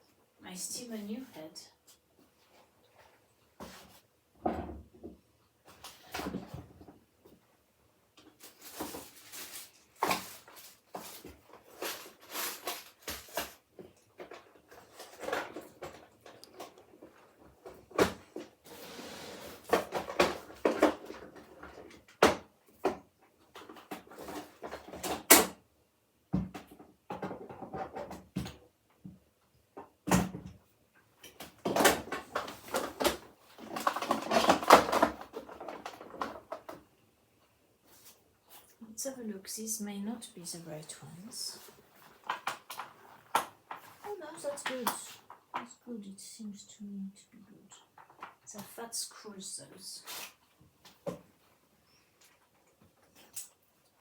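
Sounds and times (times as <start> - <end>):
rustling and scraping: 1.9 - 4.2, 8.2 - 25.3, 31.1 - 38.8, 40.7 - 45.8, 49.8 - 54.0
hands rummaging through hard objects: 8.3 - 22.1, 31.2 - 36.9, 41.5 - 45.6.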